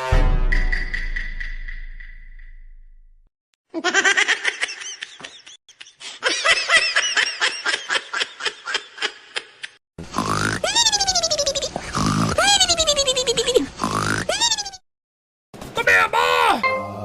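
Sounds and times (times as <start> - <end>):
person laughing hard: 3.8 - 9.8
musical tone: 16.6 - 17.0.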